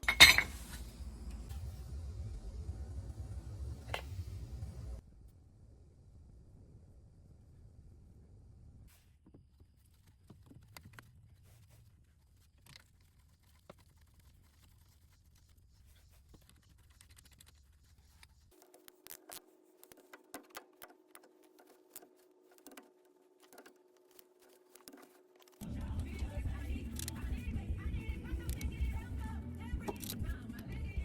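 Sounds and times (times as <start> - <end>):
faint steady hum: 0.0 - 12.6, 14.6 - 31.0
faint clicks and taps: 15.9 - 27.5.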